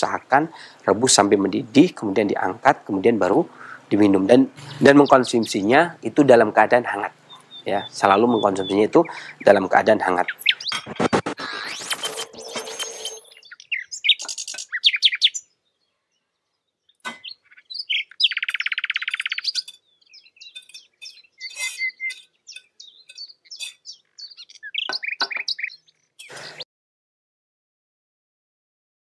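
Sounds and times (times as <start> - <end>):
small birds chirping: 0.0 - 26.6
fast buzzing bird trill: 10.2 - 15.5, 17.6 - 26.6.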